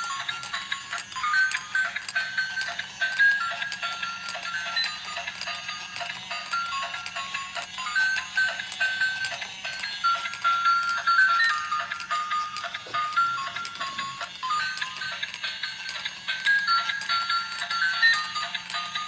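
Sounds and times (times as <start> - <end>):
simple high melody: 0.0 - 15.7.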